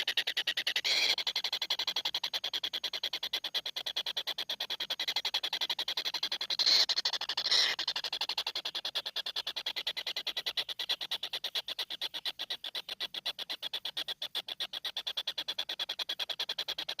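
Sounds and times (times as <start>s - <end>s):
high-pitched pulsing animal call: 0.0s - 2.0s, 5.0s - 8.3s.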